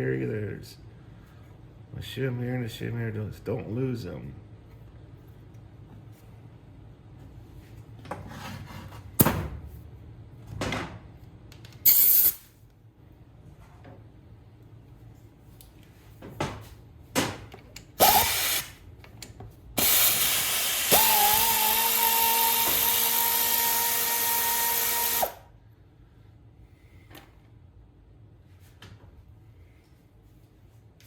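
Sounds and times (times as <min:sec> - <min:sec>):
power tool whining with hiss: 0:11.9 - 0:12.4, 0:18.0 - 0:18.7, 0:19.8 - 0:25.4.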